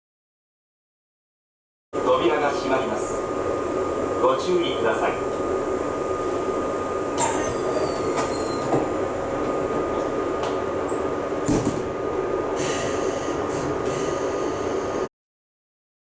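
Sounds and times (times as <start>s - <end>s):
train humming: 2.0s - 15.1s
train doors sliding shut: 6.2s - 15.1s.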